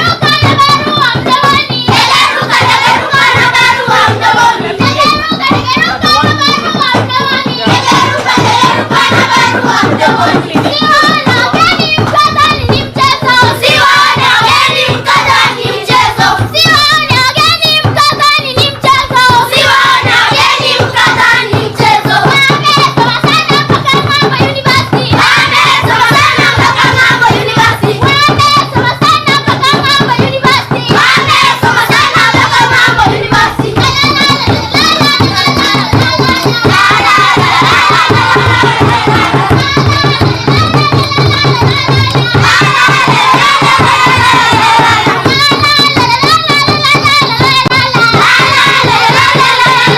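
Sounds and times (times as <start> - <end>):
children singing: 0.0 - 17.2, 18.8 - 49.9
rhythmic hand clapping: 0.0 - 49.9.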